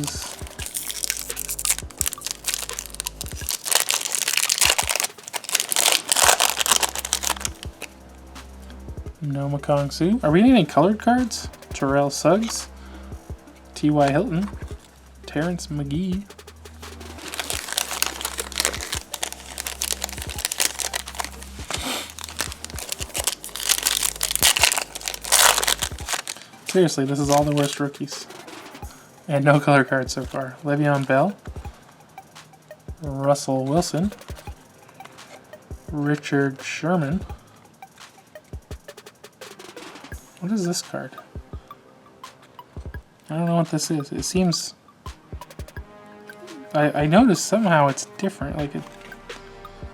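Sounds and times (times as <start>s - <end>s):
plastic wrapper crinkling and tearing: 0.0s - 7.9s, 16.9s - 27.9s.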